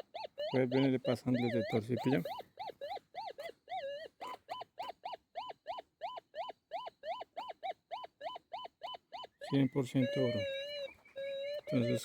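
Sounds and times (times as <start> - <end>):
metal detector warbling tone: 0.0 - 4.0, 8.0 - 12.0.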